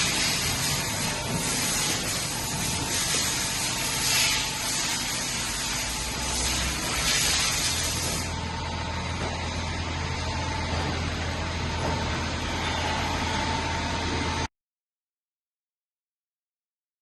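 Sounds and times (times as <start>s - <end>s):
hiss: 0.0s - 8.3s
lathe machine hum: 0.0s - 14.5s.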